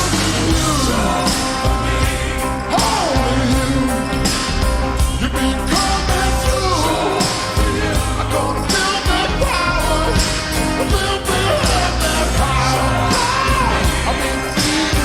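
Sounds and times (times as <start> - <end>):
person singing: 0.0 - 15.0
slowed reverb rock song: 0.0 - 15.0.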